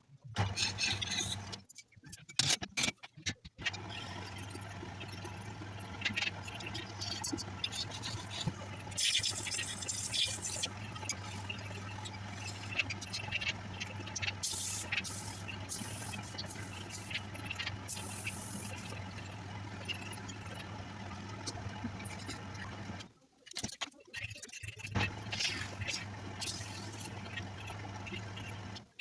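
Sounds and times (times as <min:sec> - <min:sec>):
tool scraping spinning wood: 0:00.4 - 0:01.7, 0:03.7 - 0:23.1
wood lathe motor humming: 0:03.7 - 0:23.1, 0:25.0 - 0:28.8.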